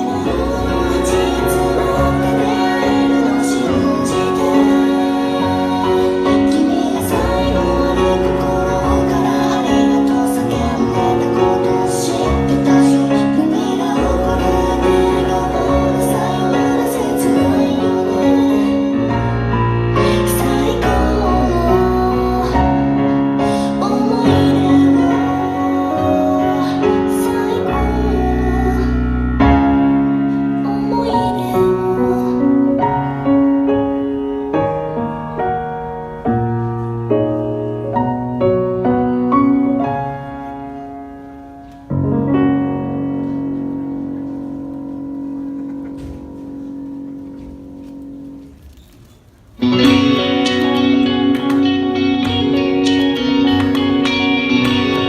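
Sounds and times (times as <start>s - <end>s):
steady bass line: 0.0s - 33.2s, 49.6s - 55.0s
pop-rock song with piano: 0.0s - 44.4s, 49.6s - 55.0s.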